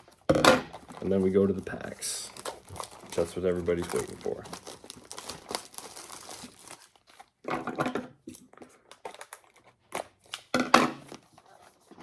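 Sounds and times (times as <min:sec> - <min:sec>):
plastic wrapping crinkling and tearing: 0:00.0 - 0:07.4, 0:08.4 - 0:10.5.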